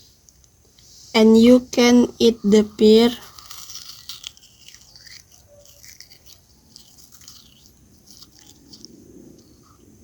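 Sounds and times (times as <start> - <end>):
person biting and chewing: 3.2 - 9.8.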